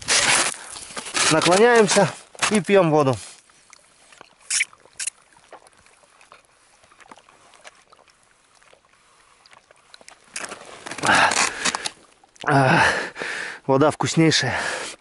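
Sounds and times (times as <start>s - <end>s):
sipping through a straw: 4.2s - 5.7s, 9.4s - 12.0s
loud rough breathing: 11.0s - 13.7s, 14.5s - 15.0s.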